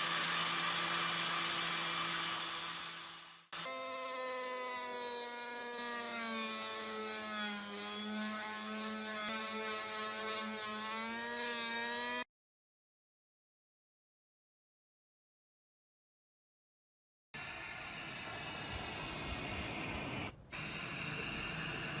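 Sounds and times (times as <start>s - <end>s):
power tool motor whine: 0.0s - 4.1s.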